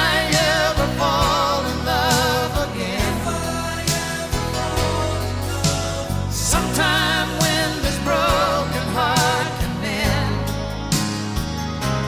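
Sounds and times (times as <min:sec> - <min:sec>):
singer with vibrato: 0:00.0 - 0:11.0
song with bass and backing instruments: 0:00.0 - 0:12.0.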